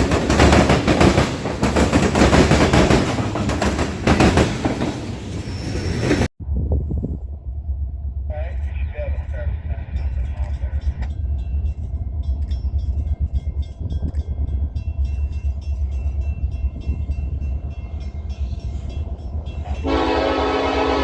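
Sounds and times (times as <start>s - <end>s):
train rumbling: 0.0s - 21.0s
locomotive air horn blast: 19.7s - 21.0s.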